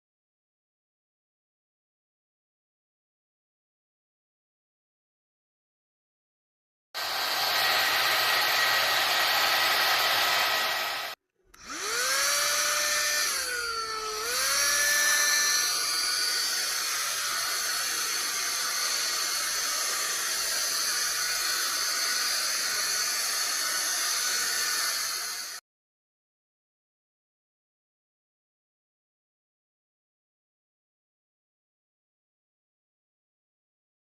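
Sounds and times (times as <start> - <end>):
fan rushing: 7.0 - 25.4
hot-air brush motor whine: 7.0 - 25.6.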